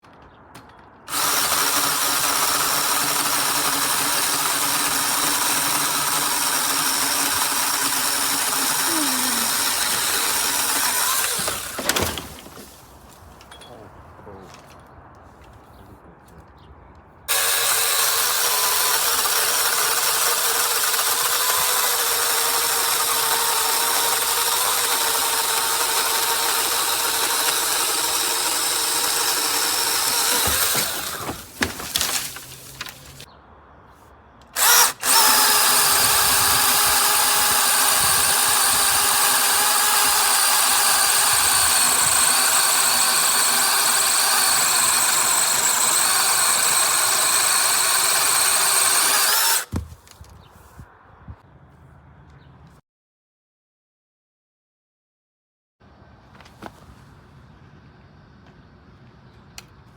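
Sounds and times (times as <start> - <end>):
electric chainsaw motor whining: 1.1 - 12.8, 17.3 - 33.3, 34.4 - 49.8.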